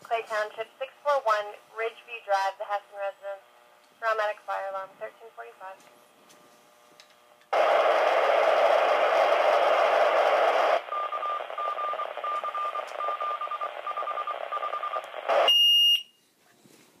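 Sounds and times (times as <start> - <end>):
radio static: 7.5 - 15.5
short beeps: 10.9 - 16.2.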